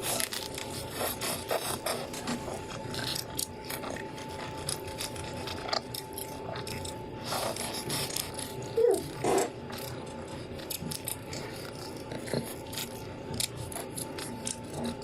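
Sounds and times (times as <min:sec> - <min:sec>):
crunching of fried chicken: 0:00.0 - 0:15.0.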